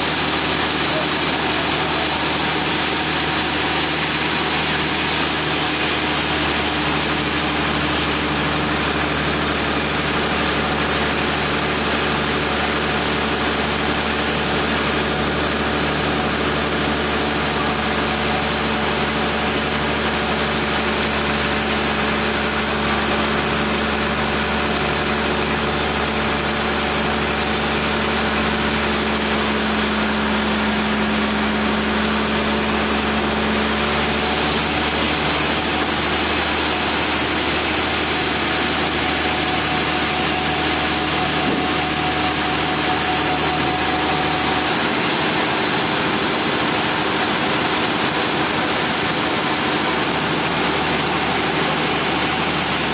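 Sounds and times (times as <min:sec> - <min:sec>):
sawmill machinery drone: 0:00.0 - 0:52.9.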